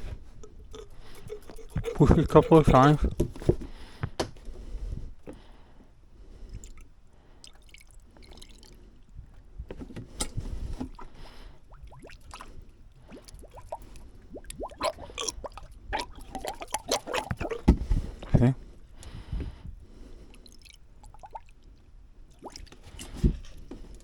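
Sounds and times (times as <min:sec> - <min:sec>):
water drips: 0:00.0 - 0:03.0, 0:06.6 - 0:08.8, 0:10.9 - 0:17.7, 0:20.4 - 0:22.8
water squishing in rubber hose: 0:00.0 - 0:03.2, 0:16.3 - 0:17.8.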